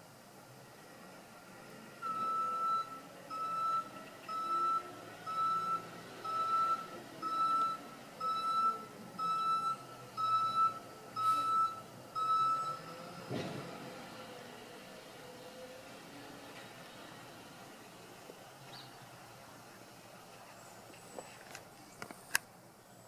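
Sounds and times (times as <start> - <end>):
back-up alarm beeping: 2.0 - 12.9.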